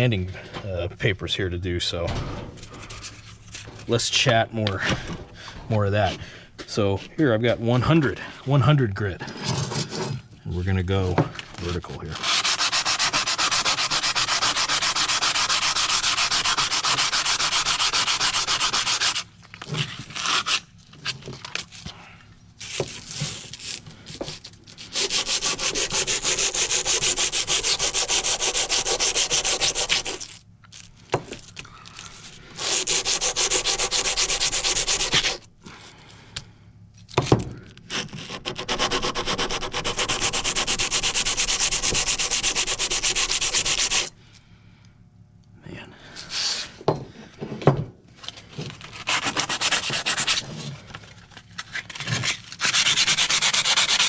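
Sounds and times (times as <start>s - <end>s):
sandpaper rasping on metal: 12.1s - 19.3s, 20.1s - 20.6s, 24.8s - 30.4s, 32.6s - 35.4s, 37.9s - 44.1s, 48.9s - 50.6s, 52.0s - 54.0s.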